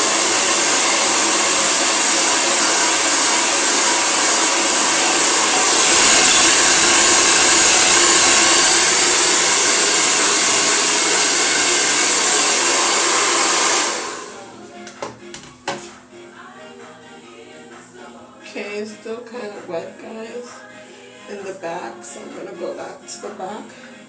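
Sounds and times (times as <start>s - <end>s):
hair dryer running: 0.0s - 16.0s.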